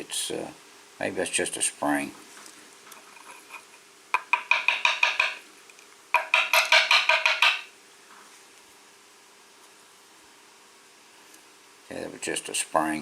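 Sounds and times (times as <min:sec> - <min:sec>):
rapid metallic knocking: 0:04.2 - 0:05.4, 0:06.2 - 0:07.7.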